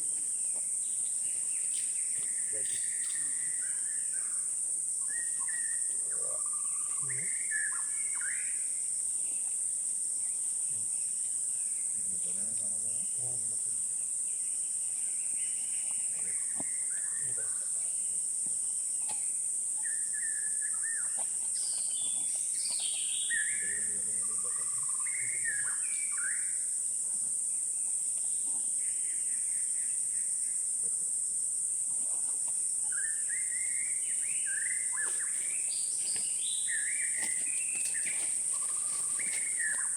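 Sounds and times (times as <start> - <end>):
bird chirps and whistled calls: 1.7 - 4.4, 19.8 - 26.5, 32.8 - 39.9
high-pitched insect drone: 28.3 - 39.9.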